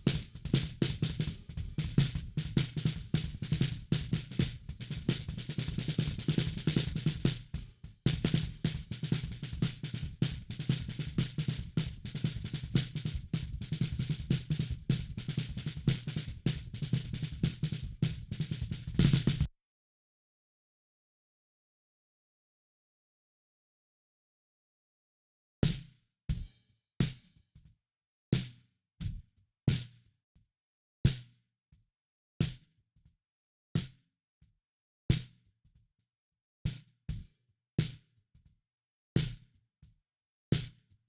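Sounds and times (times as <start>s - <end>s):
drum kit playing: 19.0s - 19.5s.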